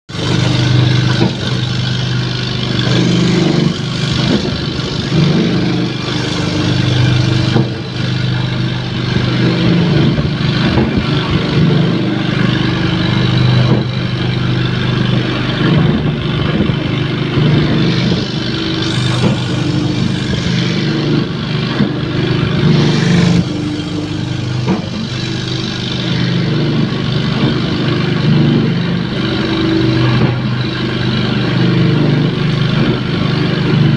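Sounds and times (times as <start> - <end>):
wood-grinding machine running: 0.1 - 33.9.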